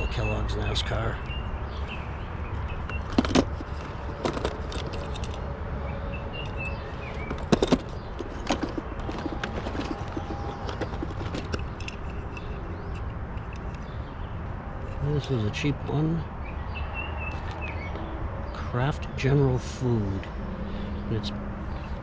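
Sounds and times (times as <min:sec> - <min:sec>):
low rumble of camera handling: 0:02.5 - 0:05.5, 0:06.4 - 0:14.1
metal toy cars clacking: 0:02.6 - 0:05.5, 0:06.4 - 0:14.0.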